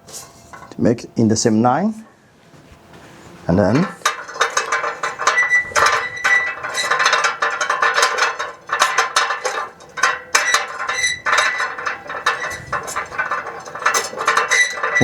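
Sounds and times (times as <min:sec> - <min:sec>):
metal parts clicking and clinking: 0:03.8 - 0:15.0.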